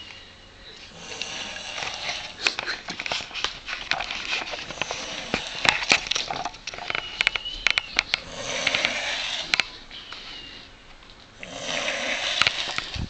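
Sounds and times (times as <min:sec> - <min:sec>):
long hissing breath: 0:00.0 - 0:02.5, 0:08.2 - 0:09.6, 0:11.4 - 0:13.0
man snoring with rattling crackles: 0:00.9 - 0:02.4, 0:04.7 - 0:06.1, 0:08.2 - 0:09.7, 0:11.4 - 0:13.0.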